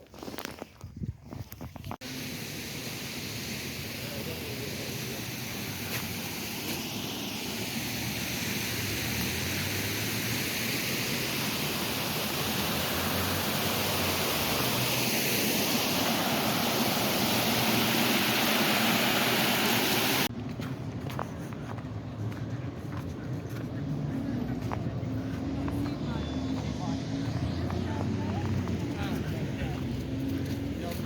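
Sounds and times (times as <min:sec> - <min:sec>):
flowing water rushing: 0:02.0 - 0:20.3.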